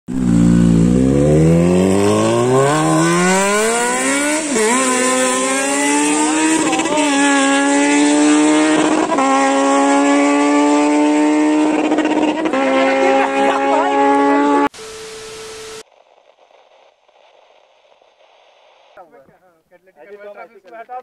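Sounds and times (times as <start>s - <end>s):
motorcycle accelerating hard: 0.1s - 14.7s.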